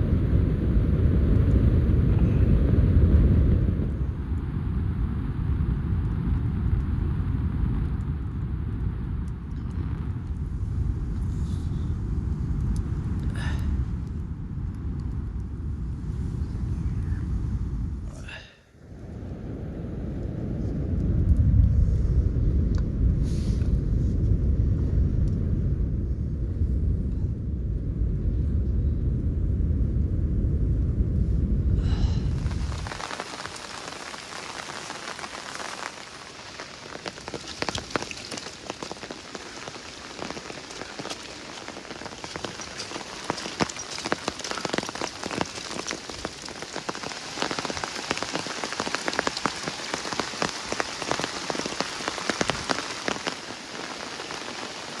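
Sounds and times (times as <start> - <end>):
wind rumbling on microphone: 0.0 - 55.0
rain falling on a surface: 1.2 - 22.0, 31.8 - 55.0.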